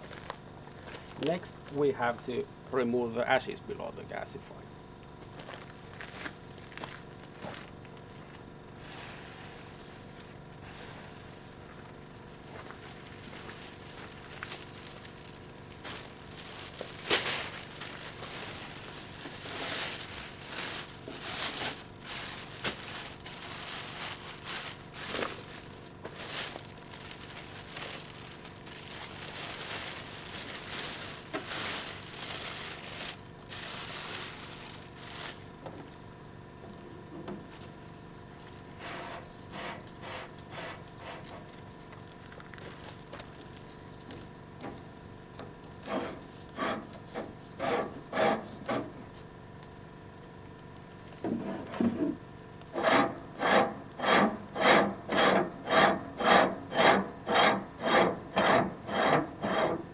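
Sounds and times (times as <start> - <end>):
ash scraping and rustling: 10.6 - 35.7.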